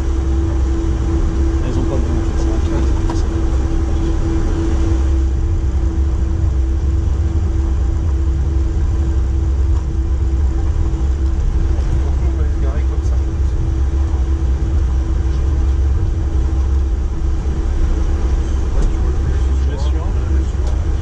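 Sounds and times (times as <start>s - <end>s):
cockpit low rumble: 0.0s - 21.0s
mid-pitched hum: 0.0s - 21.0s.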